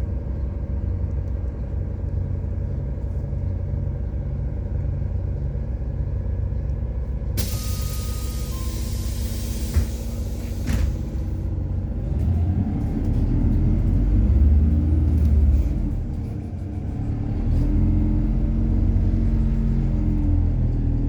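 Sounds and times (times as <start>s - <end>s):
bus engine accelerating: 0.0s - 21.0s
compressed air hiss: 7.4s - 11.3s.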